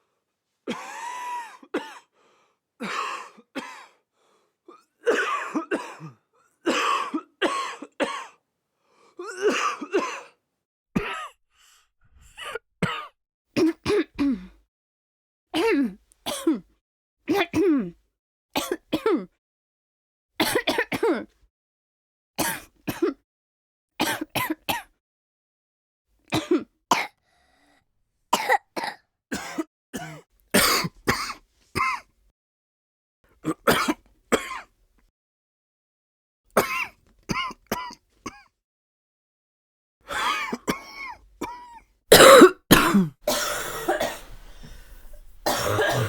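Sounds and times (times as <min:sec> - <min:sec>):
people coughing: 0:42.1 - 0:46.0.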